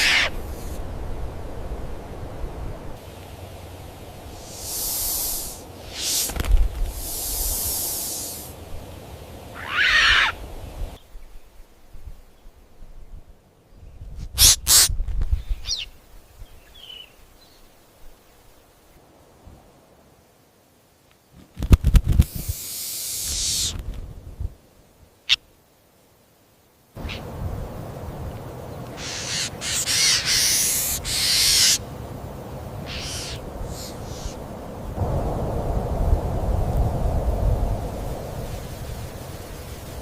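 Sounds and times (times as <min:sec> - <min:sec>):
bird harsh calls: 0:00.0 - 0:00.8, 0:09.5 - 0:10.4, 0:22.7 - 0:23.8, 0:27.0 - 0:27.3, 0:28.9 - 0:31.9, 0:32.8 - 0:34.4
faint bird chirp: 0:15.3 - 0:18.7, 0:32.9 - 0:34.4.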